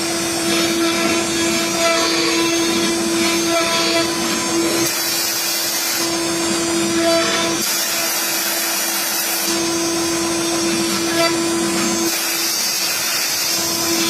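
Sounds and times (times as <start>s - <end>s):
router spindle whine: 0.0s - 14.0s.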